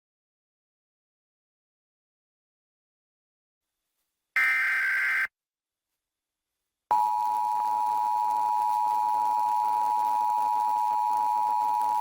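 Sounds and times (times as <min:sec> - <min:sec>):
digital header tones: 0:04.4 - 0:05.3
two-tone attention signal: 0:04.4 - 0:05.3.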